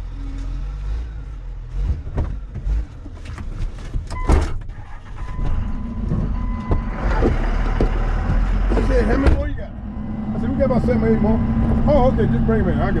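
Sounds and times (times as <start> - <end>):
knocks and clunks: 1.7 - 9.9
vehicle engine running low: 4.7 - 13.0.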